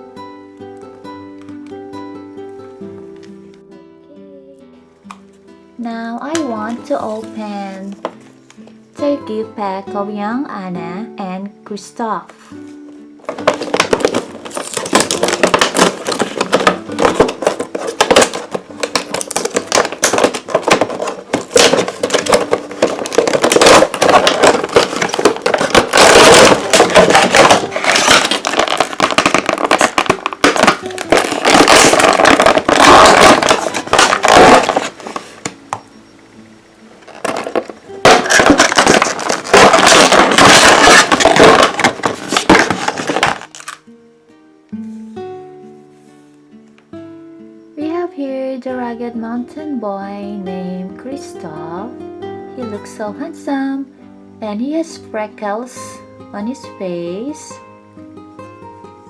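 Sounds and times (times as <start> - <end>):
packaging crackling and scraping: 13.2 - 35.6, 37.0 - 43.8.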